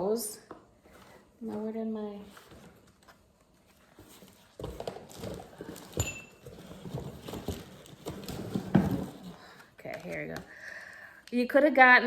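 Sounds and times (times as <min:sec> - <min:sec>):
packaging rustling: 0:02.3 - 0:10.7
objects knocking and tapping: 0:04.6 - 0:10.5.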